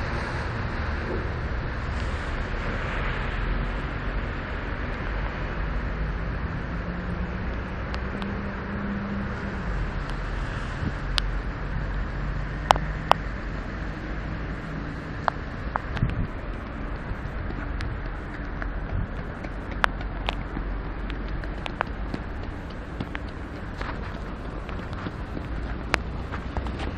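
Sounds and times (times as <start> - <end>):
vehicle engine humming past: 0.0 - 26.9
wet city street traffic: 0.0 - 26.9
sharp ticks: 17.5 - 26.7.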